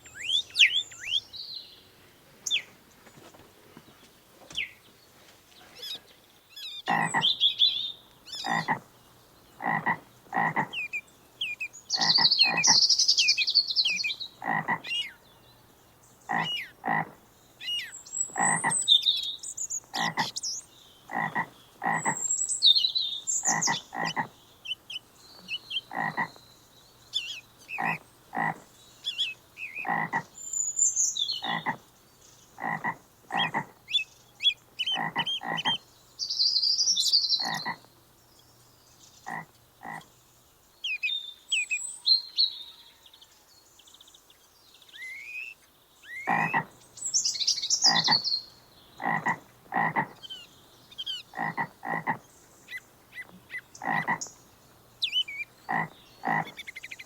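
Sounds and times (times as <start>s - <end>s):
birds chirping: 0.0s - 57.0s
short animal calls: 5.6s - 7.4s, 8.3s - 8.9s, 9.6s - 15.2s, 16.3s - 18.9s, 19.9s - 20.4s, 23.4s - 26.4s, 27.2s - 30.3s, 31.4s - 31.8s, 32.6s - 35.8s, 37.4s - 37.8s, 46.1s - 46.7s, 47.8s - 48.3s, 49.0s - 54.3s.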